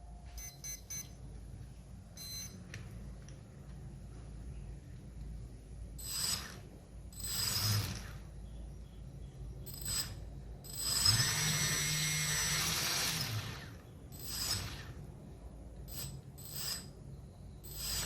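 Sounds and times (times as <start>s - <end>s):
small electric motor whirring: 6.0s - 8.4s, 9.7s - 15.0s, 15.9s - 16.9s, 17.6s - 18.0s.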